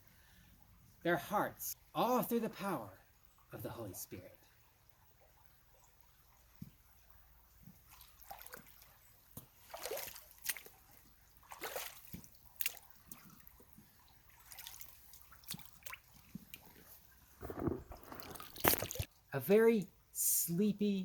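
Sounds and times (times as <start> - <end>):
water splashing and sloshing: 3.1 - 19.3.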